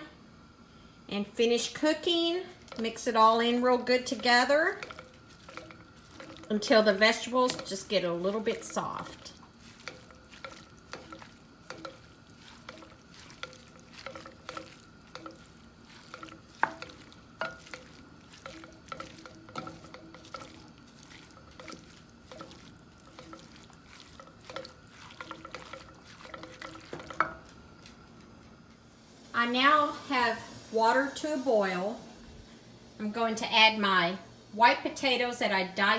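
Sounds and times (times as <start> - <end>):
food sizzling: 1.2 - 28.2, 28.9 - 35.2
utensil scraping a frying pan: 2.6 - 27.5.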